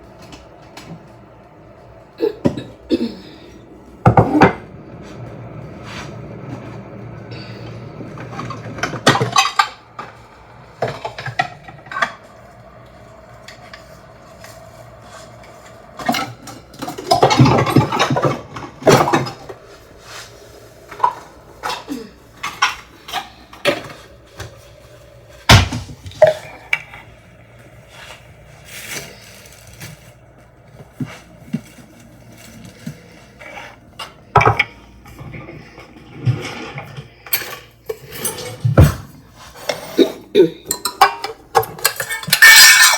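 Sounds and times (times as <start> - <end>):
pots and dishes clinking: 7.3 - 12.6, 13.5 - 20.3, 31.0 - 42.9.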